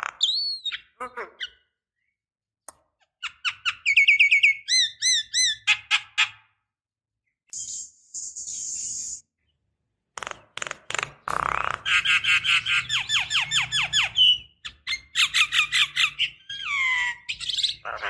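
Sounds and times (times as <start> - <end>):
bird whistling: 0.2 - 0.9, 3.7 - 5.5, 7.5 - 9.2.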